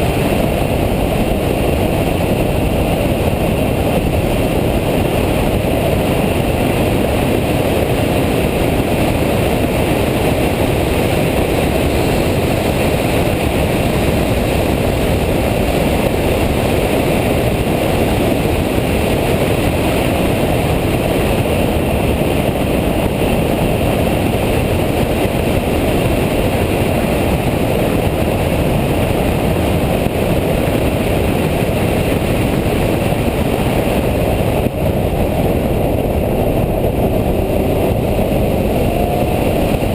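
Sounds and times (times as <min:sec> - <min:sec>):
car engine at speed: 0:00.0 - 0:39.9
wind noise: 0:00.0 - 0:39.9.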